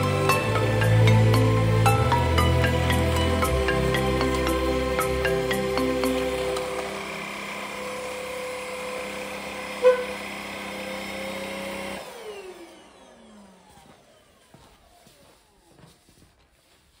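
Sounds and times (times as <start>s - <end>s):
vacuum motor spinning down: 0.0s - 15.7s
cordless vacuum running: 0.0s - 15.8s.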